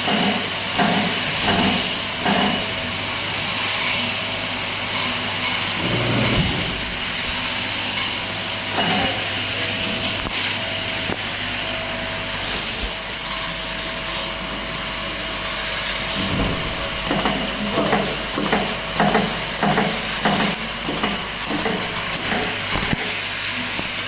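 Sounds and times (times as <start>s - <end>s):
machine hum with whine: 0.0s - 24.0s
pneumatic air hisses: 12.4s - 13.0s.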